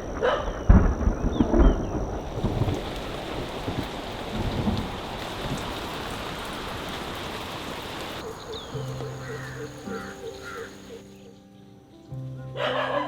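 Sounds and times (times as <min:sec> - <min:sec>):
rushing hiss with low rumbles: 0:00.6 - 0:11.0.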